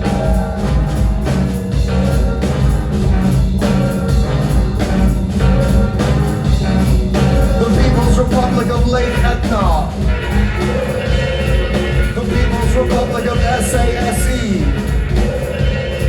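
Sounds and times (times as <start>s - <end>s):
live rock band playing: 0.0s - 16.0s.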